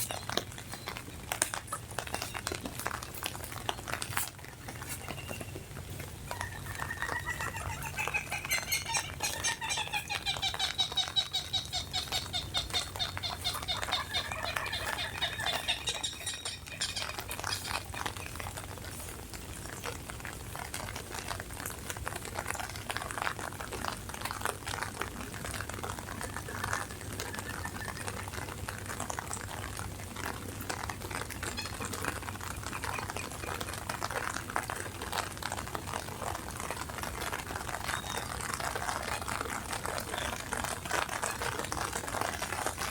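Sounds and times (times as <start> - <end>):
rain pattering: 0.0 - 42.9
bird trilling: 6.3 - 18.3.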